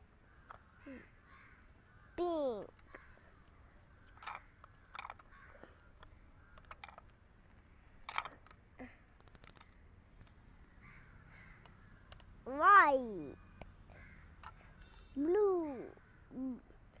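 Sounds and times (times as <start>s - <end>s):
plastic toy pieces clicking: 2.5s - 7.2s, 8.0s - 8.6s, 9.2s - 9.8s, 11.6s - 12.3s, 14.4s - 15.0s.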